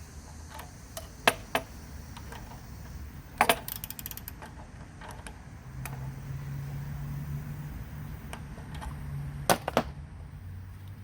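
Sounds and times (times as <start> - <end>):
socket wrench clicking: 3.4 - 6.0.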